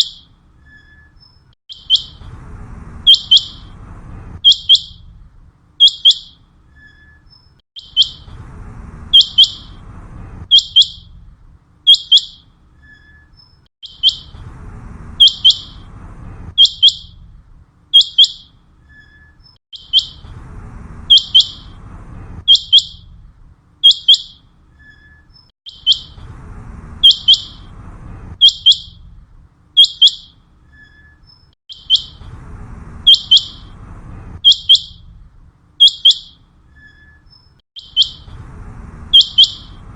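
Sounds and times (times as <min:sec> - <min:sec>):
quail calling: 0:21.1 - 0:21.7, 0:27.0 - 0:27.7, 0:39.1 - 0:39.8.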